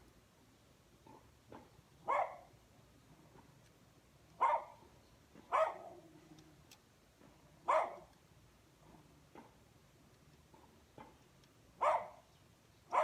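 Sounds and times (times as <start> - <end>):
dog barking: 1.1 - 2.5, 4.4 - 4.8, 5.5 - 6.0, 7.6 - 8.1, 11.8 - 12.2.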